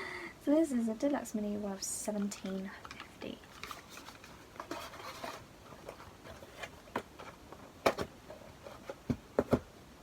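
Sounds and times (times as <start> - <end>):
packaging clicks and taps: 2.2 - 8.1.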